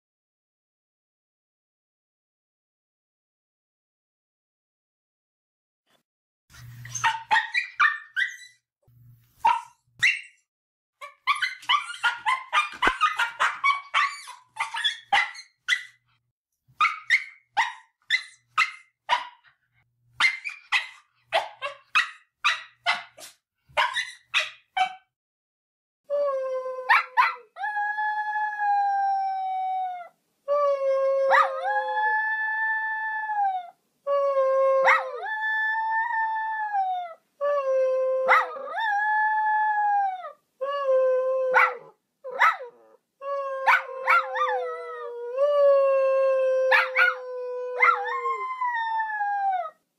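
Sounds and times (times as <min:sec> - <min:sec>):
dog barking: 0:06.9 - 0:08.2, 0:09.4 - 0:10.2, 0:11.0 - 0:16.0, 0:18.6 - 0:19.5, 0:20.2 - 0:25.1, 0:41.6 - 0:42.7
dog howling: 0:31.0 - 0:33.7, 0:34.3 - 0:37.2, 0:41.2 - 0:49.8.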